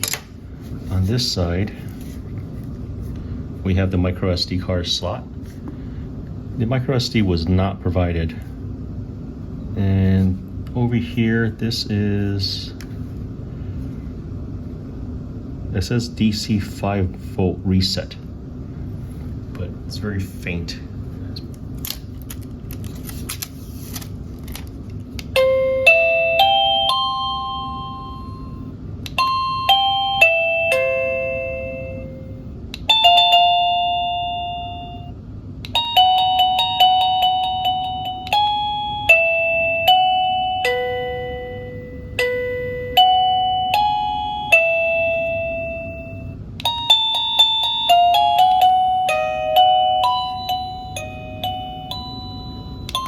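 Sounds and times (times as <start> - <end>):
low steady hum: 0.0 - 53.0
doorbell chime melodies: 25.4 - 35.1, 35.7 - 53.0.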